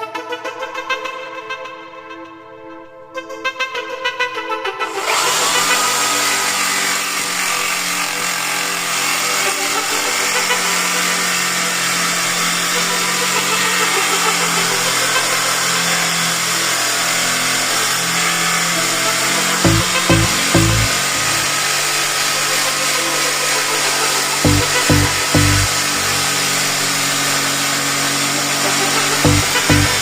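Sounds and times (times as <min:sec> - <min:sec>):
power tool grinding wood: 0:04.9 - 0:30.0.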